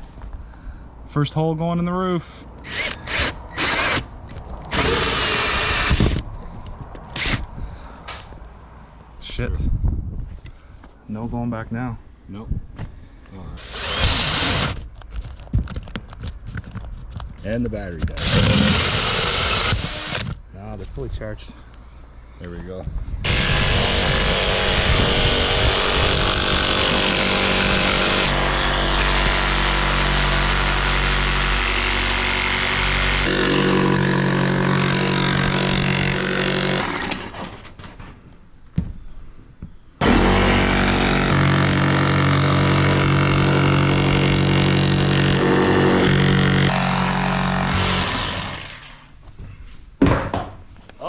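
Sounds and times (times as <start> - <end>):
power saw cutting sheet metal: 13.6 - 14.8, 23.2 - 37.4, 40.0 - 49.0.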